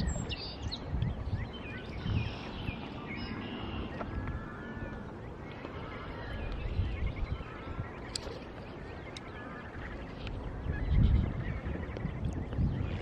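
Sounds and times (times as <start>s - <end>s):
constant low rumble: 0.0s - 13.0s
small birds chirping: 0.0s - 13.0s.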